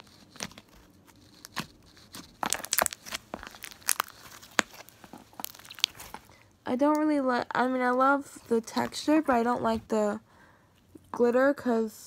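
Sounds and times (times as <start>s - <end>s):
slime sticky pops and crackles: 1.4s - 6.2s.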